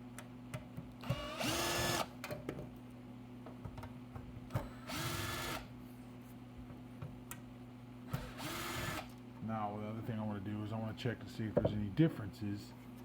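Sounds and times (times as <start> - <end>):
cordless screw gun whining: 1.0 - 2.1, 4.8 - 5.7, 8.2 - 9.1.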